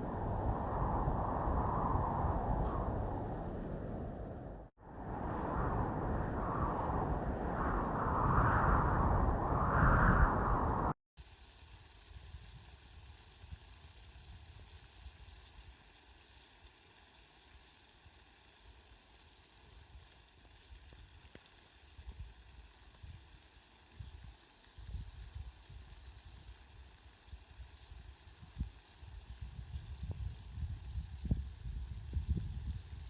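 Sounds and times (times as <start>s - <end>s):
light rain hiss: 0.0s - 9.5s, 11.2s - 33.0s
low rumbling: 0.0s - 11.0s.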